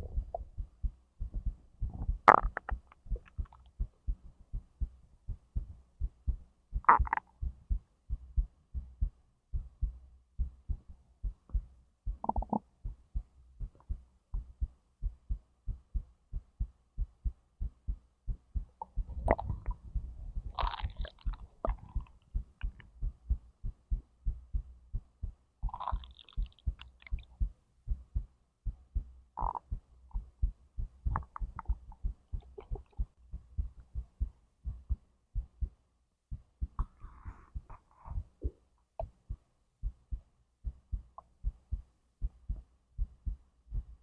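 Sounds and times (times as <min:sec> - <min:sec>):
heartbeat through the belly: 0:00.0 - 0:44.0
stomach gurgles: 0:01.8 - 0:03.7, 0:06.8 - 0:07.3, 0:12.2 - 0:12.7, 0:18.8 - 0:22.9, 0:25.6 - 0:27.3, 0:29.4 - 0:29.8, 0:31.1 - 0:33.0.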